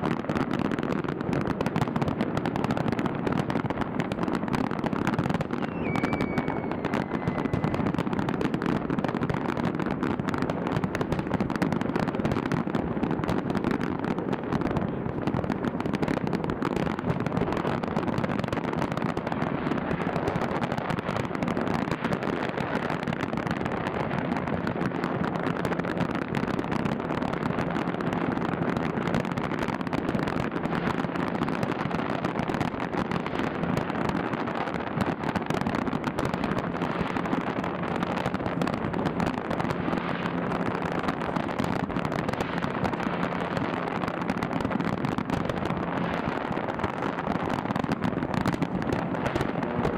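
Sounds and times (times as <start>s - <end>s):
fireworks crackling and banging: 0.0s - 49.9s.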